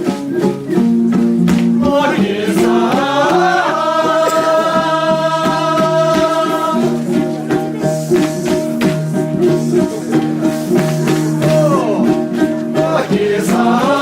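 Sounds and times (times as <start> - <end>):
plucked string instrument: 0.0 - 14.0
person singing: 1.7 - 8.4, 9.5 - 14.0.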